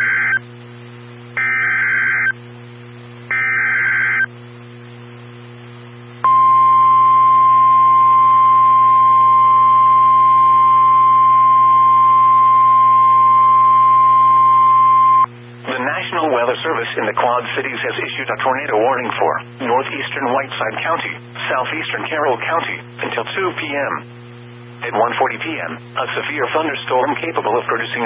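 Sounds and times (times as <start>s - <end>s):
loud steady attention tone: 0.0s - 0.5s, 1.3s - 4.4s, 6.2s - 19.0s
hiss and steady hum: 0.0s - 28.0s
harsh digital data bursts: 1.4s - 2.3s, 3.3s - 4.3s.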